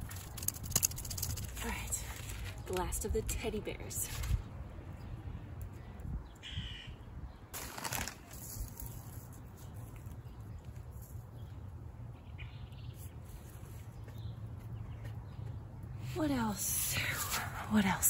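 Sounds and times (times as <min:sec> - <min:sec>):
wind buffeting microphone: 0:04.1 - 0:07.6
bird calls: 0:06.3 - 0:07.5.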